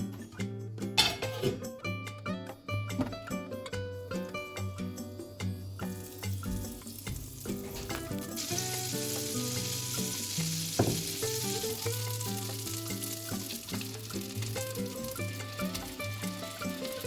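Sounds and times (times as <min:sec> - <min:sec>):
food sizzling in hot oil: 0:04.6 - 0:17.0
knock against a pan: 0:10.7 - 0:11.3.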